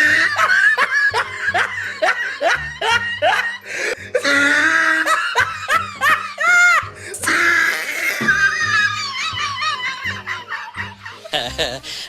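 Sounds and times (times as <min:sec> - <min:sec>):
person laughing: 0:08.2 - 0:12.0.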